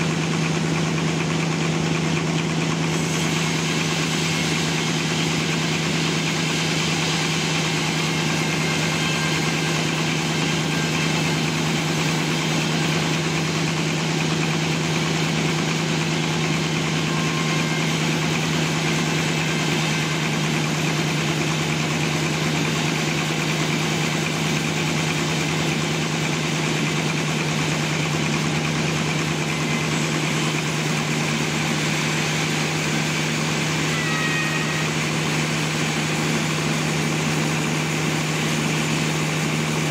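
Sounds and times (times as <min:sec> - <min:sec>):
sawmill engine humming: 0:00.0 - 0:39.9.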